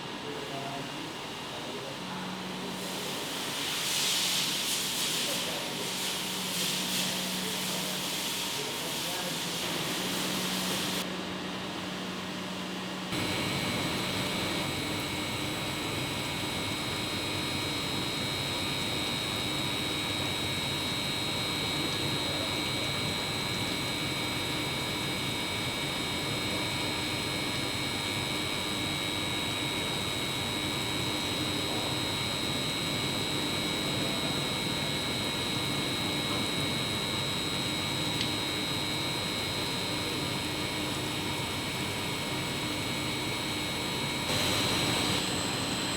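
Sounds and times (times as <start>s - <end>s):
low machine hum: 8.6s - 45.9s
grinding machine whine: 13.1s - 45.9s.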